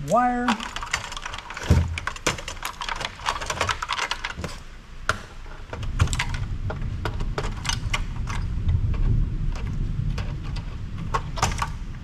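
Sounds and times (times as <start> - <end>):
low handling rumble: 5.8 - 12.0.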